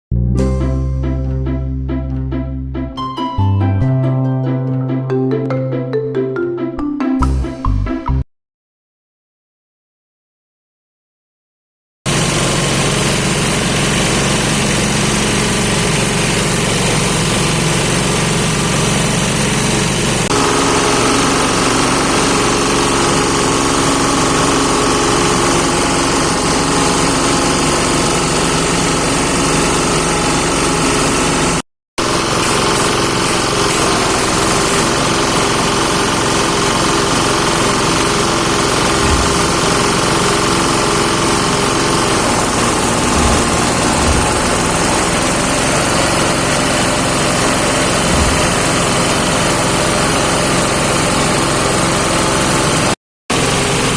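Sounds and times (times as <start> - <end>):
feed chopper machine droning: 12.1 - 53.9.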